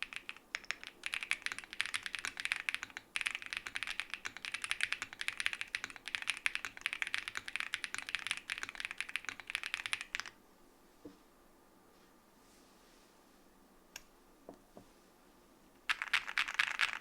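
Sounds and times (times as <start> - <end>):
fast typing on mechanical keyboard: 0.0 - 10.4, 15.9 - 17.0.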